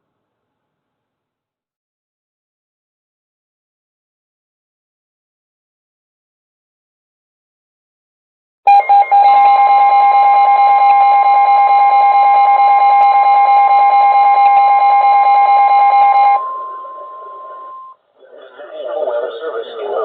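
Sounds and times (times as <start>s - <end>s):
rapid pulsing alarm tone: 8.7s - 18.0s
steady warning alarm tone: 8.7s - 18.0s.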